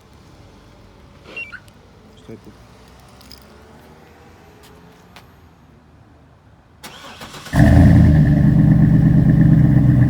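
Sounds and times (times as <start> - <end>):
car engine starter crank: 6.8 - 7.9.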